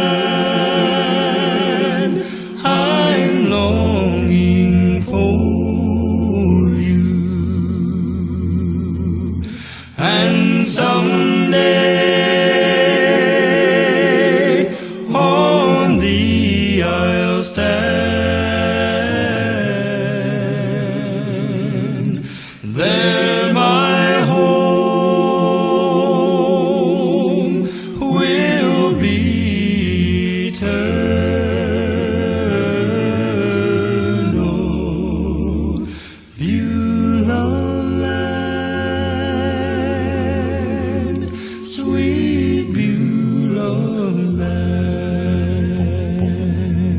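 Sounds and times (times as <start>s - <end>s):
quartet singing a cappella: 0.0s - 46.9s
singers breathing: 2.2s - 2.6s, 9.4s - 10.0s, 14.6s - 15.1s, 22.2s - 22.7s, 27.6s - 28.0s, 35.8s - 36.4s, 41.2s - 41.7s.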